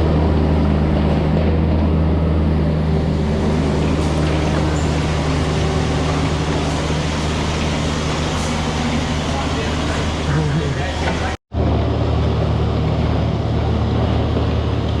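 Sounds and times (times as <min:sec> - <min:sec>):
diesel engine droning: 0:00.0 - 0:15.0.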